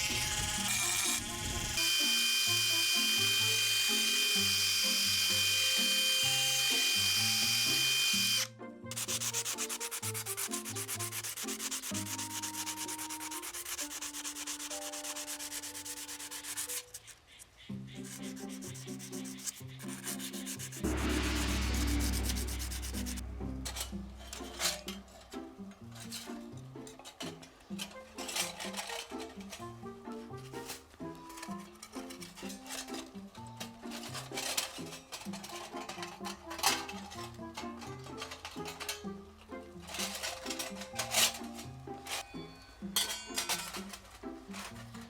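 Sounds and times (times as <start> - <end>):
grinder whining: 0.0 - 16.7
rasping rub on metal: 8.3 - 24.9
grinding rumble: 20.8 - 25.4.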